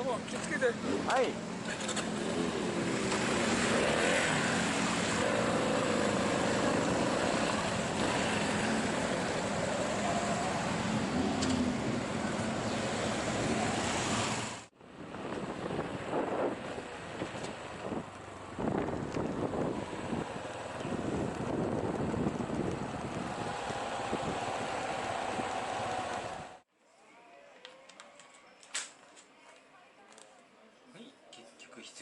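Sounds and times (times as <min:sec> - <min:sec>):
motorcycle engine running: 0:00.3 - 0:12.8, 0:16.5 - 0:26.6
wind noise on microphone: 0:14.9 - 0:26.6.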